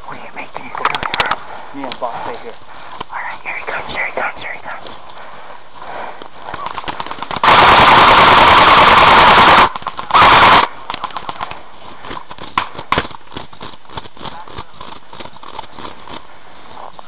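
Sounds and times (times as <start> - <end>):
airsoft gun firing bursts: 6.6 - 11.4.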